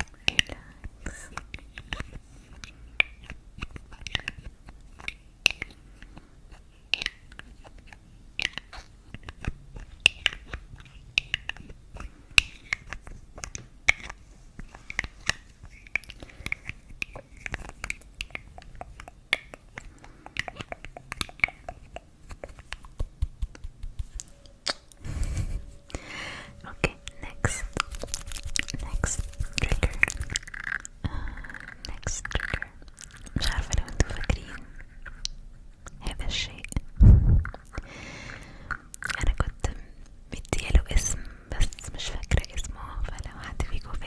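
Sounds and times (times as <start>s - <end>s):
wet mouth clicks and smacks: 14.9s - 25.0s.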